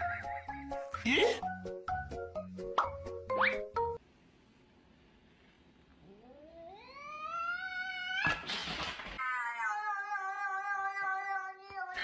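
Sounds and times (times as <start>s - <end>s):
cat yowling: 6.2s - 8.5s, 9.2s - 12.0s.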